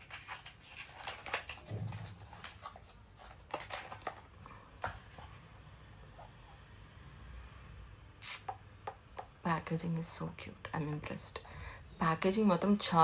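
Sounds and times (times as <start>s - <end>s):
packaging rustling: 0.0s - 5.4s.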